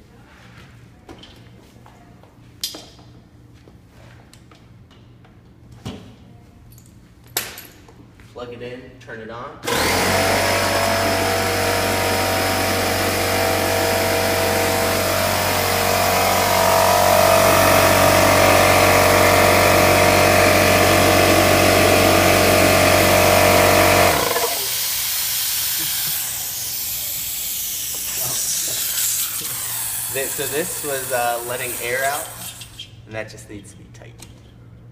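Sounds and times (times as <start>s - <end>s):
electric air compressor running: 9.6s - 32.8s
air hissing from hose fitting: 24.6s - 32.9s.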